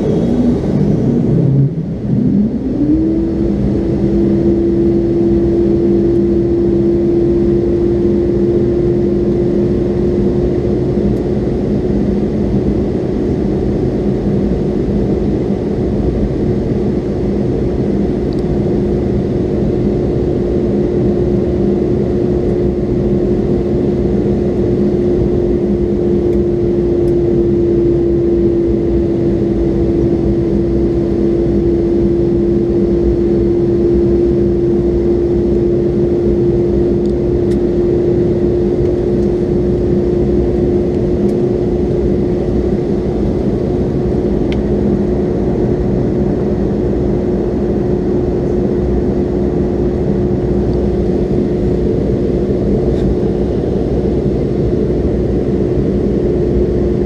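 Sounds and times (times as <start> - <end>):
jet engines roaring in cabin: 0.0 - 57.0.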